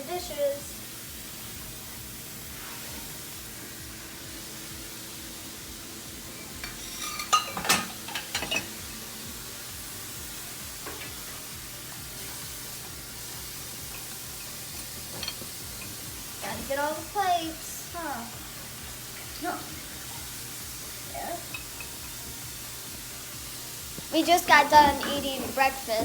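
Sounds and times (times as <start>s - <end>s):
steady hiss: 0.0s - 26.0s
dishes clinking and clattering: 6.4s - 9.0s, 10.8s - 11.3s, 13.6s - 16.2s, 21.4s - 22.2s, 23.9s - 26.0s.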